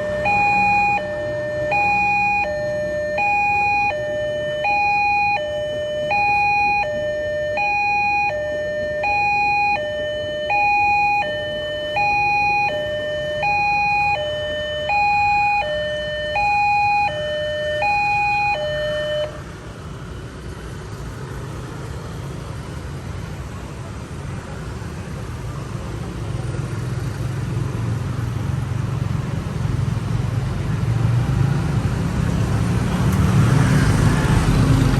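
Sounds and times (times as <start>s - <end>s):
level crossing two-tone alarm: 0.0s - 19.4s
low rumble of vehicles: 0.0s - 34.9s.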